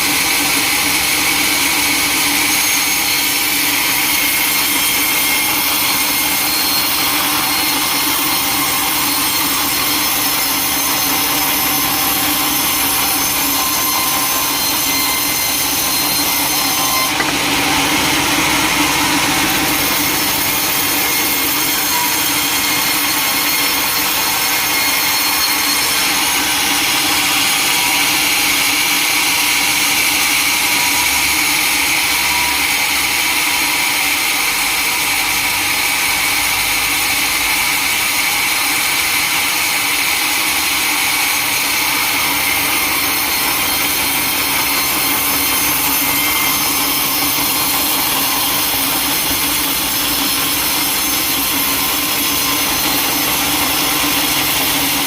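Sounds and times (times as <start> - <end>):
sawmill saw cutting wood: 0.0 - 55.0.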